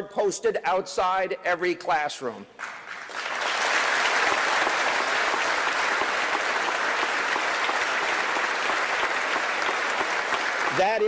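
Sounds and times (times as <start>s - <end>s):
audience applauding: 2.6s - 11.0s.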